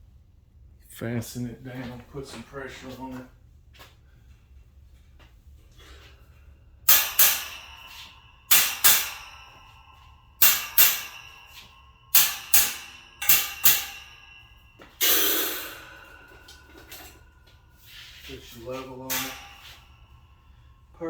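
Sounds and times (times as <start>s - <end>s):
metal shelf struck ringing: 6.9s - 20.7s.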